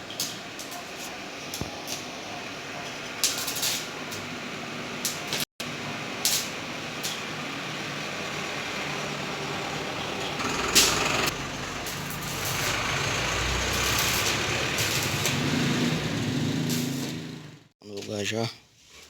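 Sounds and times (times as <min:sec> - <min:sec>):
street background noise: 0:00.0 - 0:17.7
vehicle engine passing: 0:07.6 - 0:17.7.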